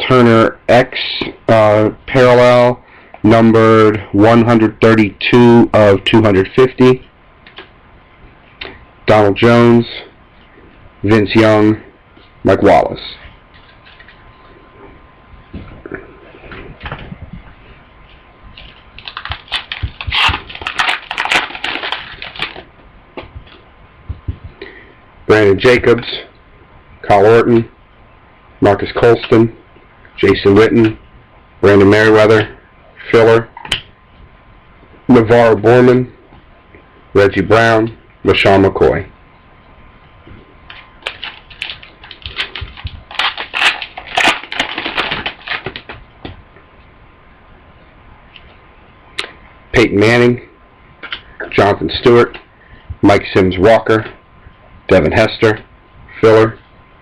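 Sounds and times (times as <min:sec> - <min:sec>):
card pack wrapper tearing: 0:19.0 - 0:22.6, 0:40.7 - 0:45.9.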